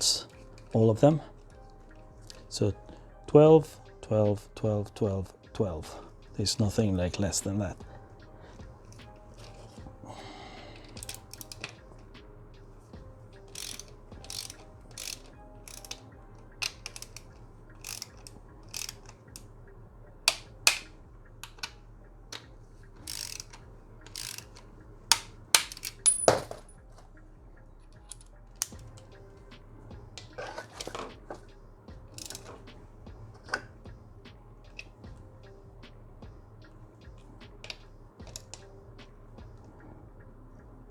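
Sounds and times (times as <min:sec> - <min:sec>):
ratchet clicks: 0:00.0 - 0:02.9, 0:06.2 - 0:40.3
metal tools and bolts clinking: 0:13.4 - 0:19.4, 0:21.5 - 0:26.8, 0:30.2 - 0:32.8.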